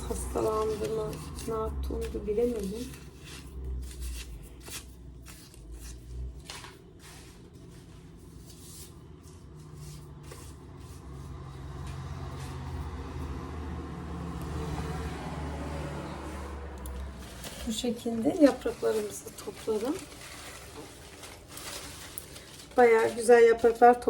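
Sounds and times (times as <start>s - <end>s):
leaves rustling and snapping: 16.8s - 23.7s.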